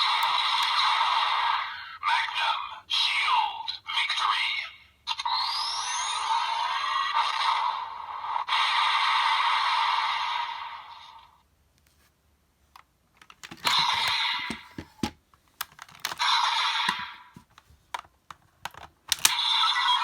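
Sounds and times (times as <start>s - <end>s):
plastic toy clicks: 0.0s - 0.8s, 13.2s - 19.7s
toy electronic sound effects: 19.1s - 20.0s.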